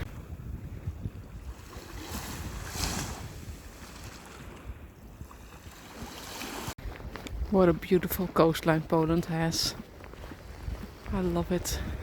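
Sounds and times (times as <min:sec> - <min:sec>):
sea waves washing on shore: 0:00.0 - 0:06.8
wind on microphone: 0:00.0 - 0:12.0.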